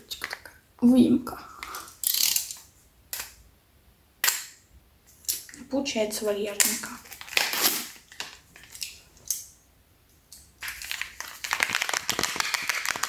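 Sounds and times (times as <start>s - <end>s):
packaging taps and rustles: 7.0s - 9.0s, 10.6s - 13.0s
packaging crinkling and clicking: 7.0s - 9.4s, 10.6s - 13.0s.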